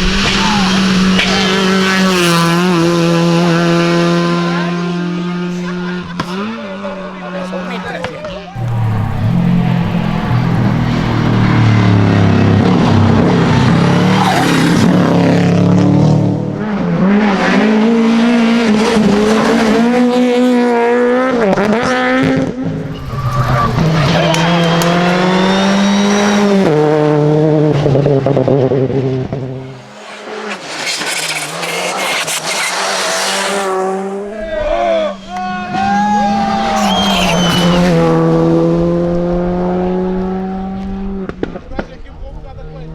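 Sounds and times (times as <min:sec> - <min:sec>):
rally car engines revving: 0:00.0 - 0:42.9
tyre squeal and skidding: 0:08.6 - 0:12.9, 0:13.7 - 0:14.9, 0:22.8 - 0:26.8, 0:29.7 - 0:38.2.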